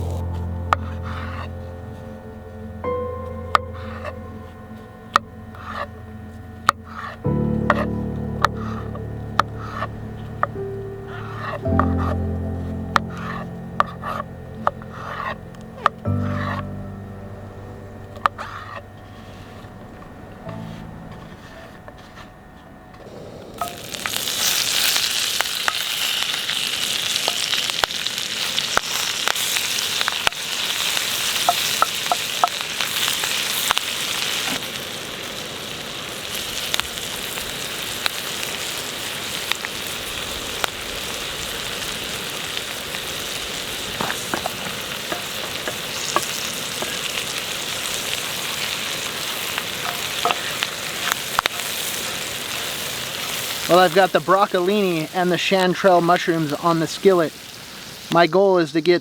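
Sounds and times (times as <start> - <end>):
vegetables sizzling in a skillet: 23.6 - 58.4.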